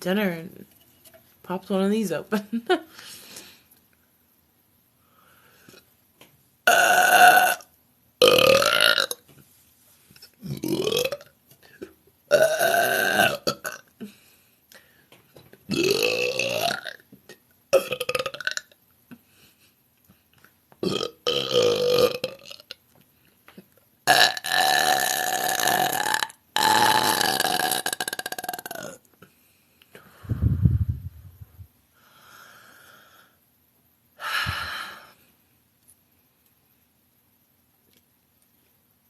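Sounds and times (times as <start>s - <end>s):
woman belching: 6.7s - 7.6s, 10.5s - 11.3s, 12.3s - 13.8s, 15.7s - 17.0s, 20.8s - 22.6s, 24.1s - 29.0s.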